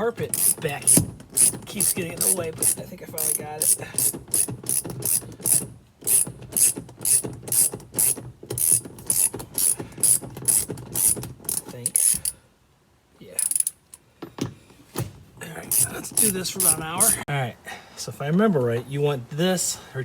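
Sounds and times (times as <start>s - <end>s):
ratchet wrench clicking: 0.3s - 12.4s, 13.4s - 14.0s, 15.7s - 17.2s.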